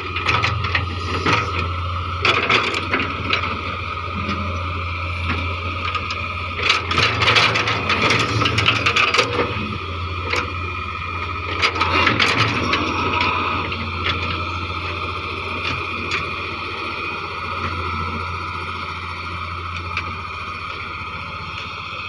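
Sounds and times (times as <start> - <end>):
excavator diesel engine running: 0.0 - 22.0
hydraulic whine: 0.0 - 22.0
clanks and scraping: 11.5 - 14.4.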